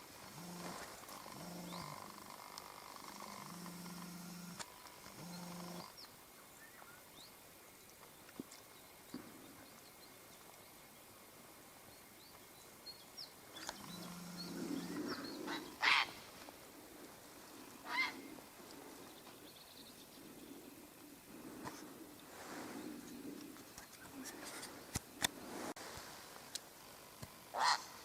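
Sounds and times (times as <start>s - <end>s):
small birds chirping: 1.3s - 2.2s, 3.0s - 11.1s, 11.9s - 16.2s
harsh animal calls: 13.8s - 16.2s, 17.8s - 18.3s, 27.5s - 28.0s.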